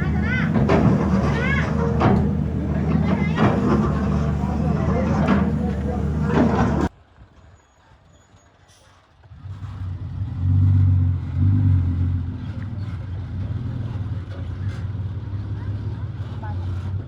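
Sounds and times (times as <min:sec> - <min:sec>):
heavy vehicle engine running: 0:00.0 - 0:06.9, 0:09.3 - 0:17.0.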